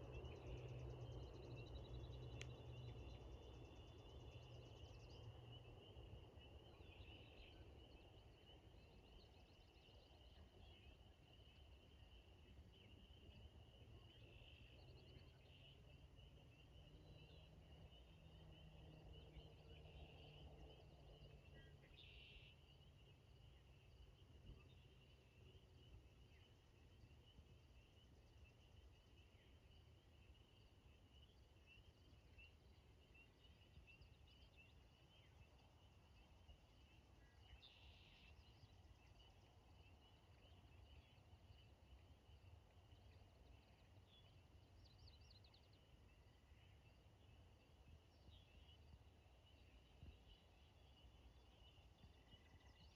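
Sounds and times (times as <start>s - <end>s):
frogs trilling: 27.7s - 52.9s.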